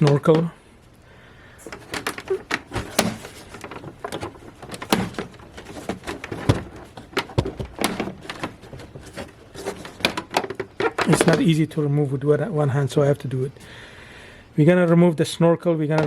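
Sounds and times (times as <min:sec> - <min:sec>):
plastic clicks and knocks: 0:01.6 - 0:11.5.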